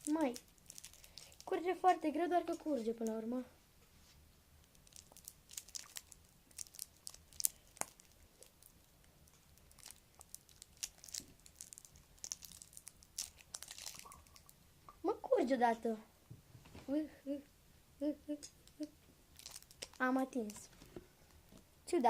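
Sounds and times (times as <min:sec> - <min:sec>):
plastic tube crinkling and clicking: 0:00.0 - 0:03.2, 0:04.6 - 0:14.6, 0:18.4 - 0:21.6.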